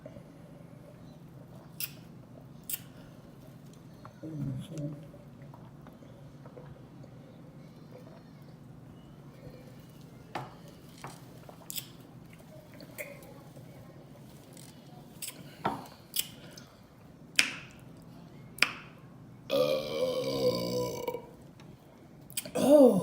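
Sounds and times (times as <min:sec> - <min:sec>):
wet mouth clicks and smacks: 0:01.8 - 0:02.0, 0:15.2 - 0:15.4, 0:22.3 - 0:22.6
long burp: 0:19.5 - 0:21.3, 0:22.5 - 0:23.0.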